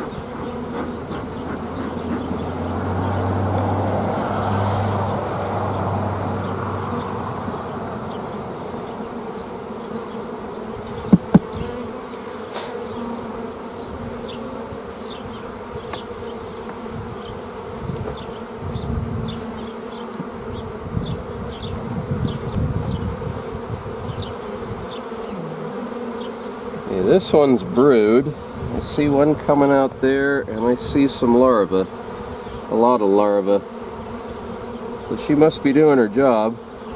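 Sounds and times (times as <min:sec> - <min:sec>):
honeybees buzzing: 0:00.0 - 0:36.9
sharp knocks: 0:11.1 - 0:11.5.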